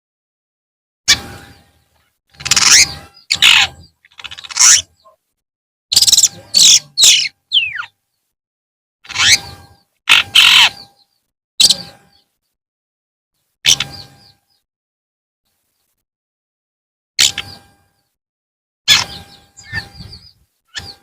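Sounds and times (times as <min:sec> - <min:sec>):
bird giving harsh rasping calls: 0:01.1 - 0:05.2, 0:05.9 - 0:08.0, 0:09.0 - 0:11.0, 0:13.7 - 0:14.3, 0:18.9 - 0:21.0.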